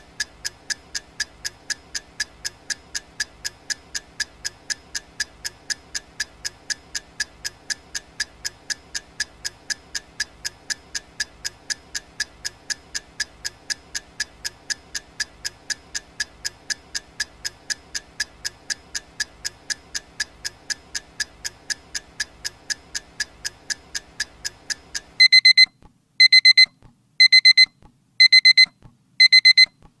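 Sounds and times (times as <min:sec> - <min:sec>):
timer ticking: 0:00.0 - 0:29.9
digital alarm beeps: 0:25.2 - 0:29.8.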